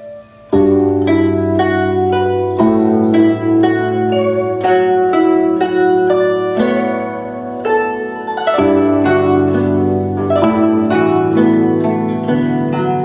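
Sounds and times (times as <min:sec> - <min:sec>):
zither plucked melody: 0:00.0 - 0:13.0.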